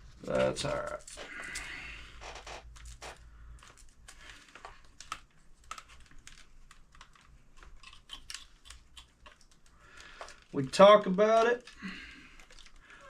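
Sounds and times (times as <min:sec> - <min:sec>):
small parts and tools clicking: 0:02.4 - 0:10.6, 0:11.2 - 0:13.0.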